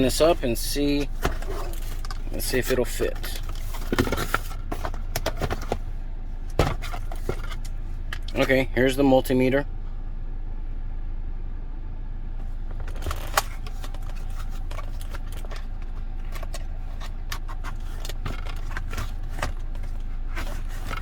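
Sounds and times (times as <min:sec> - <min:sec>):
steady low hum: 0:00.0 - 0:21.0
plastic case clicks and scrapes: 0:01.0 - 0:05.8, 0:06.6 - 0:08.5, 0:12.7 - 0:21.0.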